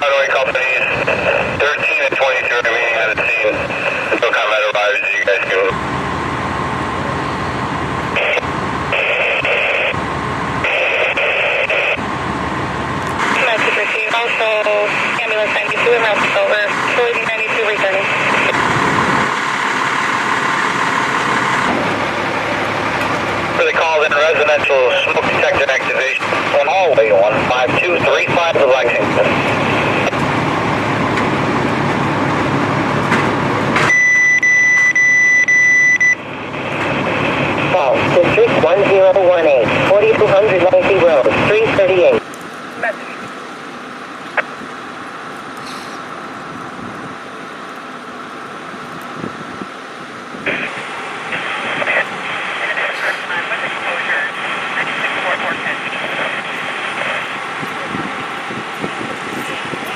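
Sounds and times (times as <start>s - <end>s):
radio static hiss: 0.0s - 5.8s, 8.1s - 10.0s, 10.6s - 12.0s, 13.0s - 20.4s, 21.4s - 30.8s, 35.8s - 49.3s, 50.3s - 59.9s
steady rushing noise: 0.0s - 33.9s, 36.1s - 59.9s
harsh high-pitched static: 8.1s - 10.0s, 10.6s - 12.0s, 23.5s - 30.2s, 50.4s - 58.4s
high-pitched electronic beep tone: 33.8s - 36.2s.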